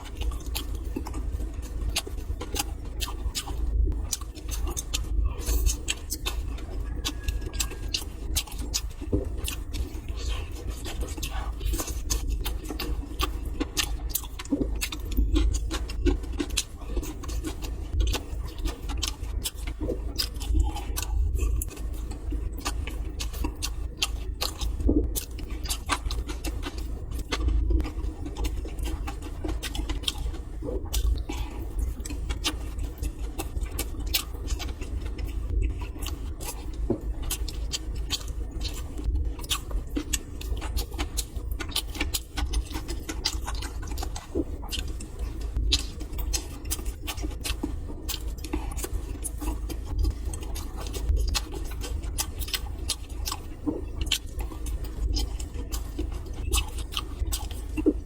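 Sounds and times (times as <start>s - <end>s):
person chewing: 0.0s - 58.0s
steady low hum: 0.0s - 58.0s.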